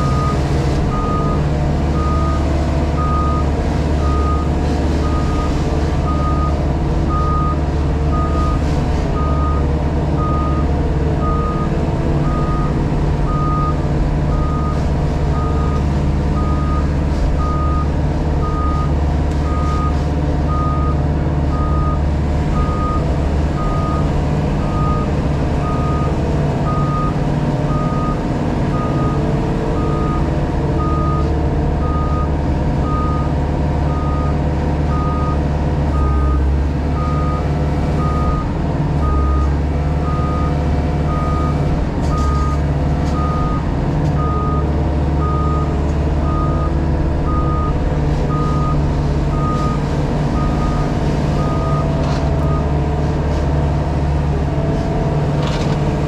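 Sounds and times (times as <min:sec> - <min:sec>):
diesel engine running: 0:00.0 - 0:56.0
reversing alarm beeping: 0:44.2 - 0:52.8.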